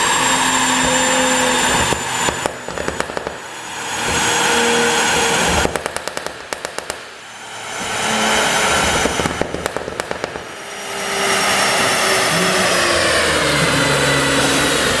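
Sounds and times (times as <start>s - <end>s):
car engine revving: 0.0s - 15.0s
exhaust crackling pops: 1.8s - 4.2s, 5.5s - 7.2s, 9.0s - 10.6s.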